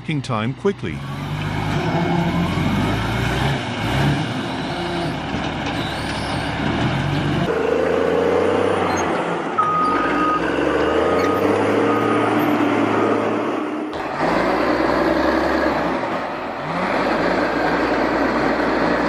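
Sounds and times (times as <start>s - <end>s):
heavy diesel machinery running: 0.0s - 19.0s
engine rising in pitch: 1.0s - 5.2s, 7.4s - 19.0s.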